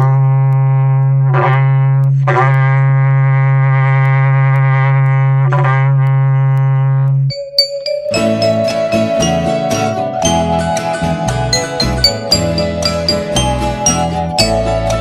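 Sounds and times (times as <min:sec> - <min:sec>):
high bell-like chimes: 0:07.3 - 0:15.0.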